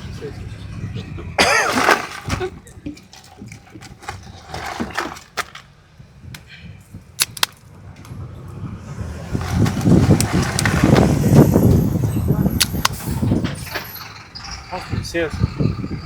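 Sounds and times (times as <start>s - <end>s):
motor vehicle passing: 5.7s - 16.0s
sharp clicks: 7.2s - 8.1s, 12.6s - 13.2s.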